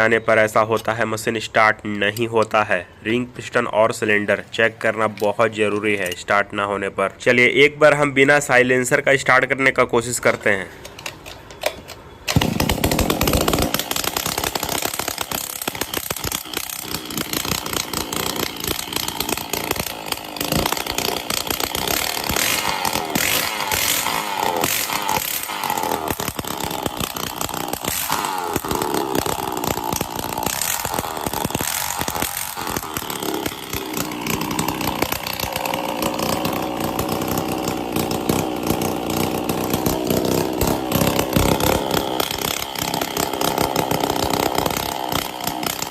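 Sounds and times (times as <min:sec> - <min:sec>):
brush cutter engine running: 0:10.8 - 0:45.9.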